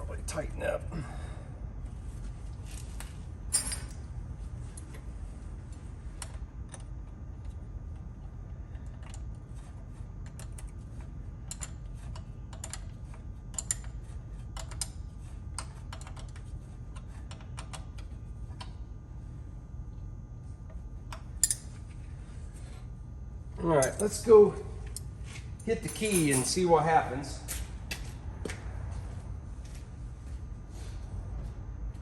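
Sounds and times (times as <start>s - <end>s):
wrench clicking on metal: 21.1s - 21.6s.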